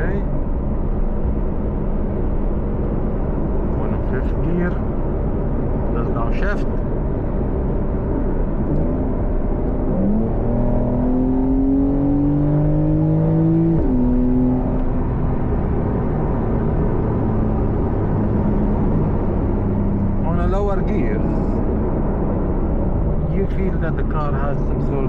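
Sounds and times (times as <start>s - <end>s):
car engine revving inside cabin: 0.0s - 25.0s.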